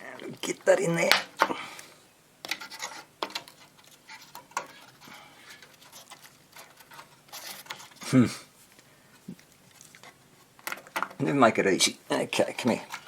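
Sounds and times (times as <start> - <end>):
faint scratching and rubbing: 2.5 - 10.6, 12.1 - 13.0.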